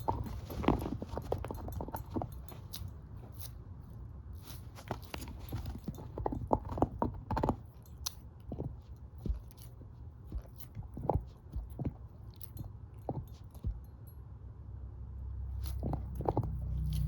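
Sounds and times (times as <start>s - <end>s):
dog crunching a bone: 0.0s - 13.9s, 15.6s - 17.0s.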